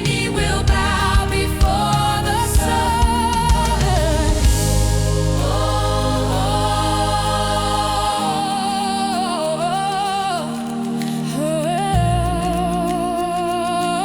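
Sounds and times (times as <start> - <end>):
deep bass: 0.0 - 8.2
sustained chords: 0.0 - 10.7
person singing wordless melody: 0.0 - 14.0.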